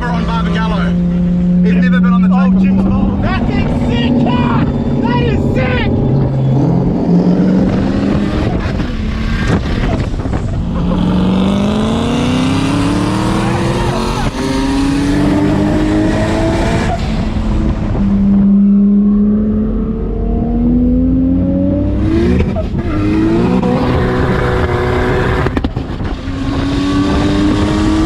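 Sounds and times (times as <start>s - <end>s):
car engine accelerating hard: 0.0s - 28.0s.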